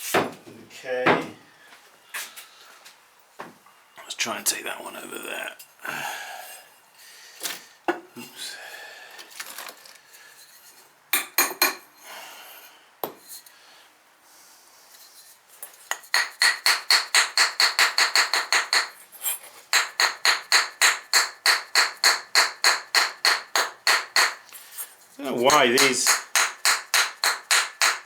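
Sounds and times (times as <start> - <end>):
rapid ringing taps: 15.9 - 18.9.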